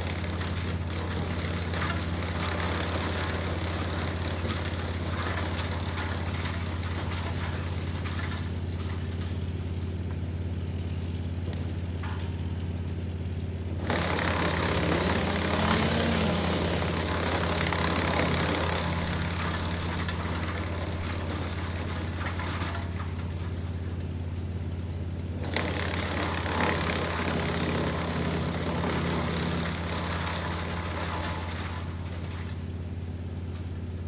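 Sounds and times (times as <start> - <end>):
wood chipping rush: 0.0 - 12.6, 13.4 - 24.0, 25.3 - 32.7
wood chipper engine humming: 0.0 - 34.0.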